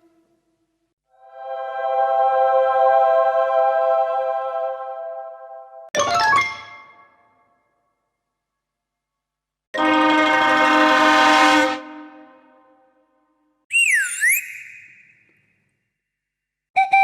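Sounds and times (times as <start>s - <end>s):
cartoon horn blast: 9.8s - 12.7s
swooping cartoon whistle: 13.7s - 15.3s, 16.8s - 17.0s.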